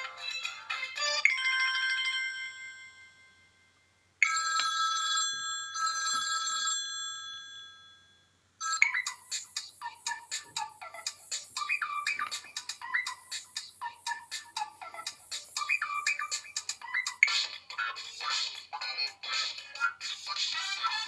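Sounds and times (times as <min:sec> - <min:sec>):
busy ringtone tune: 0:00.0 - 0:03.4, 0:04.2 - 0:17.4
bell-like chime: 0:01.2 - 0:04.0.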